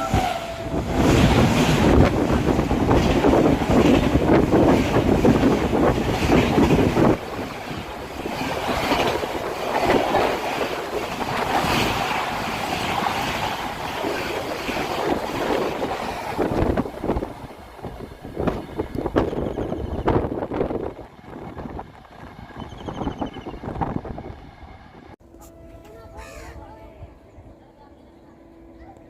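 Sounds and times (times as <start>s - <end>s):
wind buffeting microphone: 0.0s - 25.2s
express train passing: 0.0s - 29.0s.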